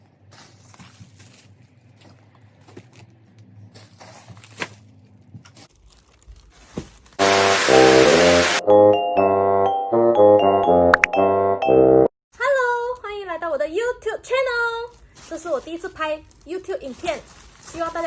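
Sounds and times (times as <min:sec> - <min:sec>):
loud intro music: 0:07.2 - 0:12.1.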